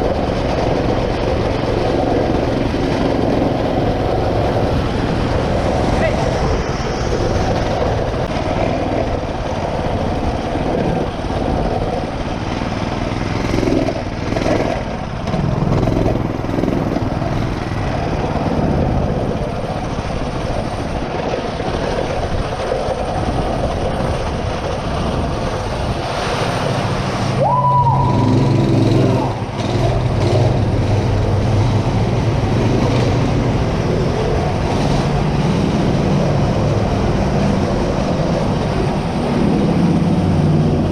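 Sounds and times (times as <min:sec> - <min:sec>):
small motorbike engine running: 0:00.0 - 0:27.1.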